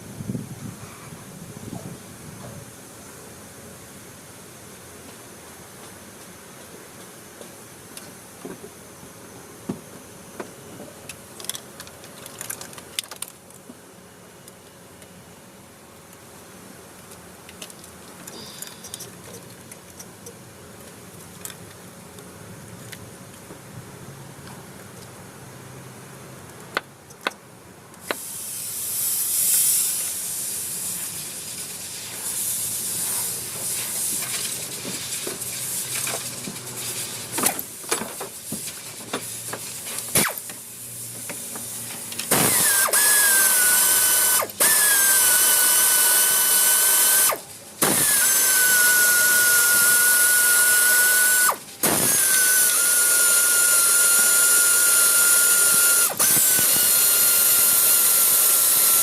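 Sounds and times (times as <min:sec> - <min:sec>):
power tool high whine: 0:42.3 - 0:59.0.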